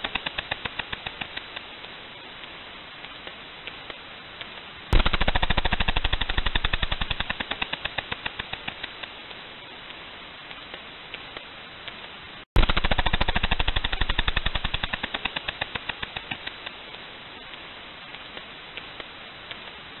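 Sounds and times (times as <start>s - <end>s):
whale clicking: 0.0s - 1.7s, 12.6s - 16.8s.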